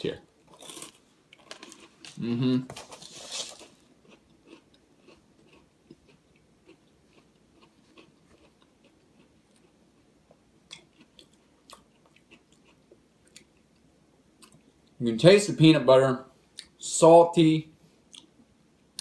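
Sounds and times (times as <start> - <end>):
chewing crispy wafer bar: 0.5 - 10.1.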